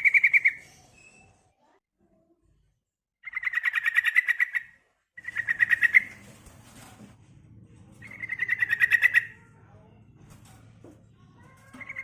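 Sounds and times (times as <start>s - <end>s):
bird chattering calls: 3.2s - 6.1s, 8.1s - 9.4s.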